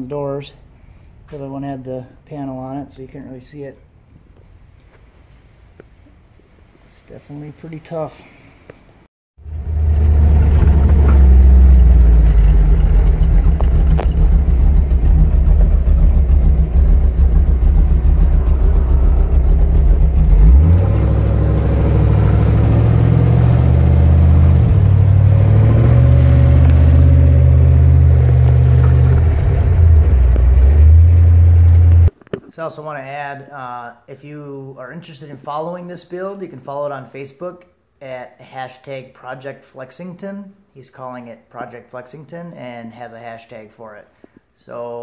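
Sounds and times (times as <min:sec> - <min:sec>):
deep subwoofer bass notes: 0:09.4 - 0:32.1.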